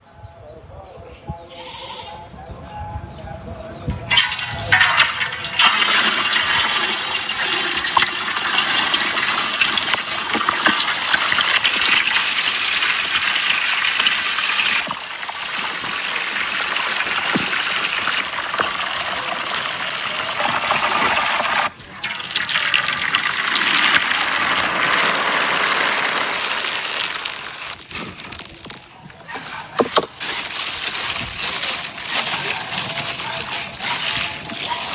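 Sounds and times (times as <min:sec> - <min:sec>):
fish sizzling in hot oil: 0:04.1 - 0:28.9, 0:30.2 - 0:34.9.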